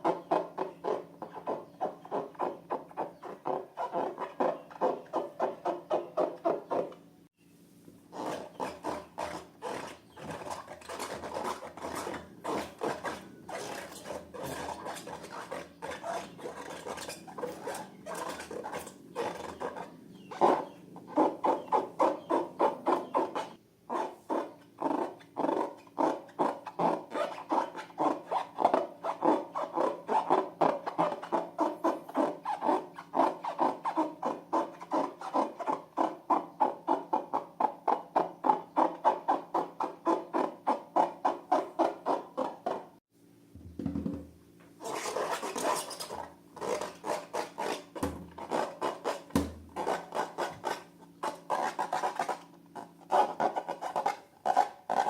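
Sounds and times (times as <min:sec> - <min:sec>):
balloons rubbed by hand: 0:08.1 - 0:25.0, 0:44.8 - 0:55.0.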